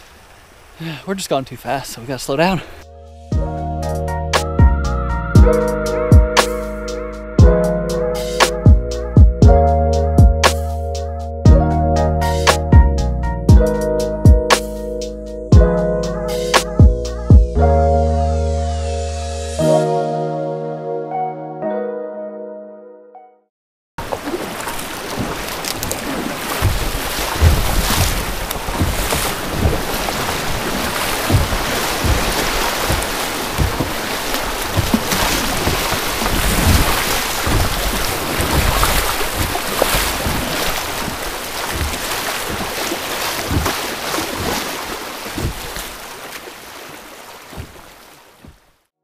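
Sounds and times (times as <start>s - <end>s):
rushing floodwater splashing: 0.0s - 2.8s, 24.0s - 48.9s
wind buffeting microphone: 25.0s - 45.9s.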